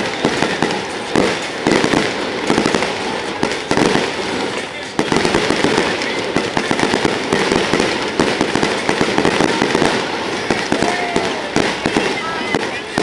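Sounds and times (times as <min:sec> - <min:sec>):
fireworks bangs and crackling: 0:00.0 - 0:13.0.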